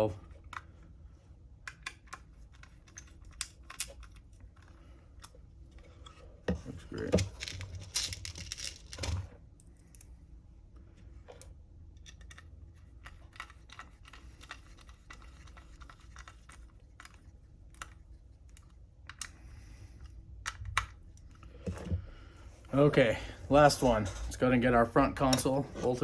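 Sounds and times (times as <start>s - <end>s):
small plastic parts and screws clicking: 1.6s - 5.4s, 11.4s - 21.5s.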